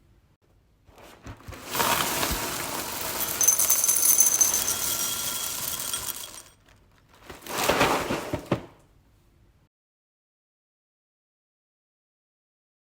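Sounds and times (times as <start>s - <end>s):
cereal pouring into bowl: 1.6s - 6.6s.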